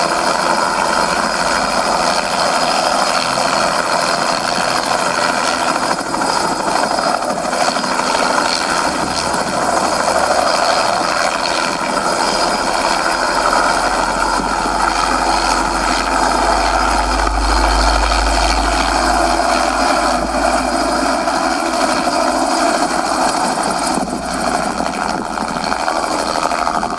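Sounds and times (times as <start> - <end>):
model helicopter rotor noise: 0.0 - 26.9
turbine-like sound effect: 0.0 - 26.9
deep rumble: 8.6 - 26.9.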